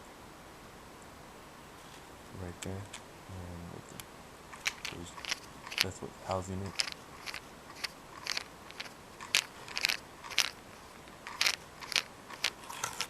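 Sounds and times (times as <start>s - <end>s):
small clicks and crunchy scrapes: 3.9s - 13.0s.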